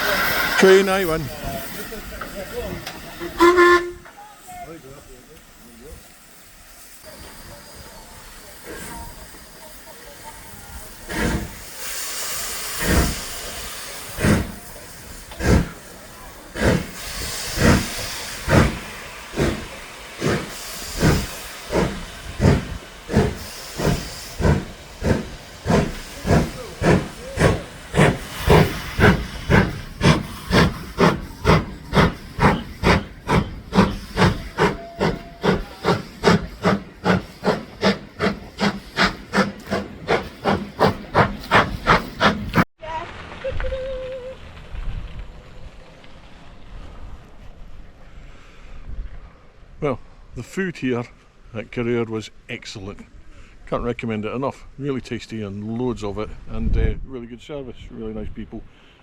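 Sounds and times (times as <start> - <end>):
steam hissing: 0.0 - 42.7
steam locomotive chuffing: 0.0 - 42.7.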